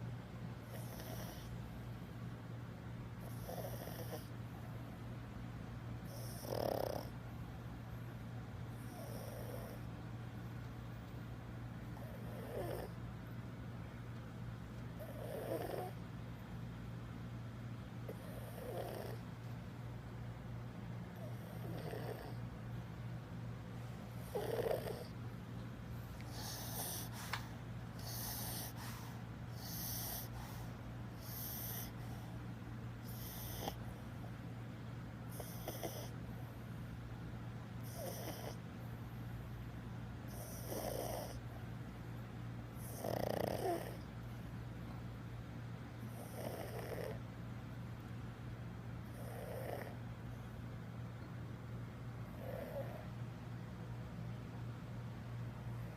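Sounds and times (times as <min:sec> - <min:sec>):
steady low hum: 0:00.0 - 0:55.9
dog snoring: 0:00.6 - 0:01.7, 0:03.2 - 0:04.7, 0:06.0 - 0:07.2, 0:08.7 - 0:09.9, 0:11.9 - 0:13.0, 0:15.0 - 0:16.0, 0:18.0 - 0:19.3, 0:21.2 - 0:22.5, 0:24.1 - 0:25.2, 0:26.0 - 0:32.3, 0:33.0 - 0:34.2, 0:35.3 - 0:36.6, 0:37.8 - 0:38.7, 0:40.3 - 0:41.6, 0:42.7 - 0:44.2, 0:46.0 - 0:47.3, 0:49.0 - 0:50.0, 0:52.2 - 0:53.2.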